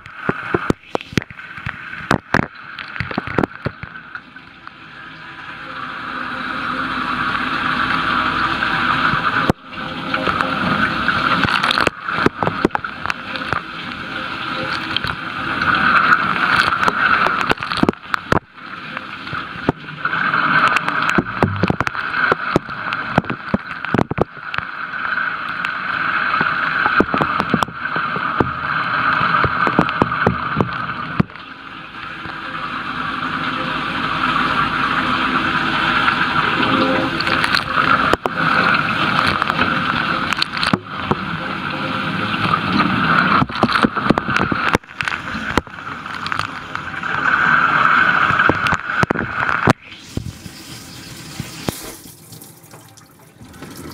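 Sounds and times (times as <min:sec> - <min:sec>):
water spattering against racks: 0:42.7 - 0:53.9
dishwasher water spraying: 0:50.0 - 0:53.9.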